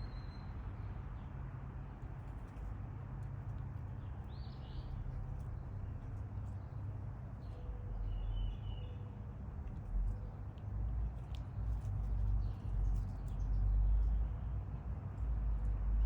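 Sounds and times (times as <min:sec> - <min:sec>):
low outdoor rumble: 0:01.9 - 0:16.0
bird chirp: 0:07.4 - 0:09.1.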